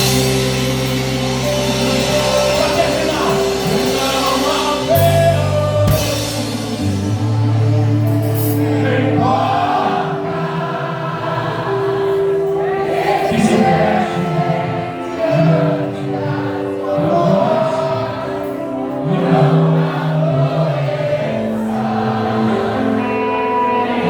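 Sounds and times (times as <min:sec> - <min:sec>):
band playing sustained chords: 0:00.0 - 0:24.0
voices singing together: 0:00.0 - 0:24.0.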